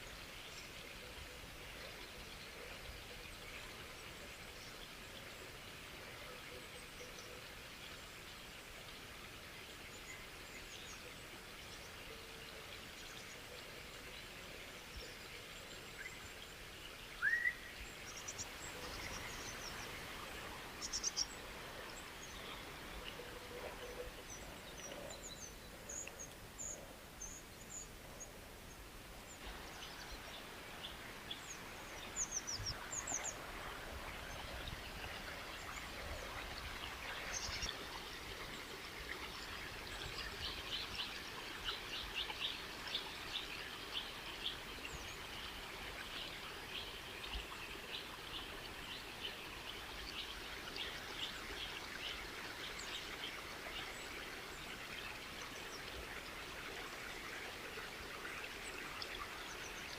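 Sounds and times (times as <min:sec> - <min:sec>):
flowing water rushing: 0:00.0 - 0:59.9.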